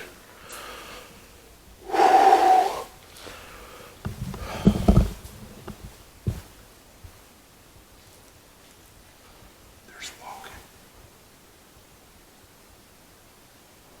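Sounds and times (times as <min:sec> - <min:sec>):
dull thumps: 0:04.0 - 0:06.6.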